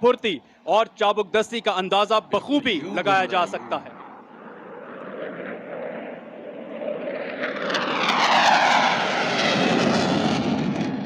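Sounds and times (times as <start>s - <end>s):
jet engine flypast: 2.4s - 11.0s.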